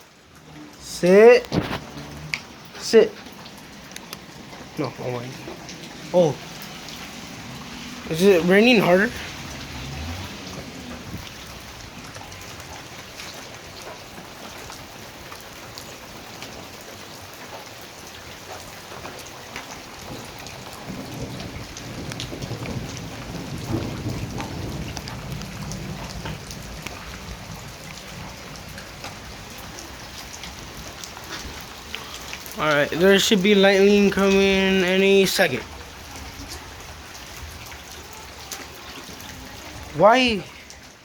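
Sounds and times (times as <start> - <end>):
heavy rain falling: 0.0 - 41.0
thunder rumbling: 20.0 - 37.6.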